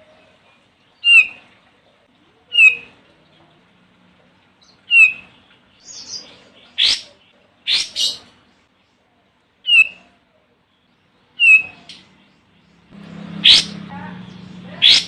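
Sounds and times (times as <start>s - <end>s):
bird calling harsh scratchy notes: 1.0s - 1.4s, 4.9s - 5.3s, 9.7s - 10.0s, 11.4s - 12.1s, 13.0s - 15.0s
bird whistling sliding notes: 11.4s - 11.8s.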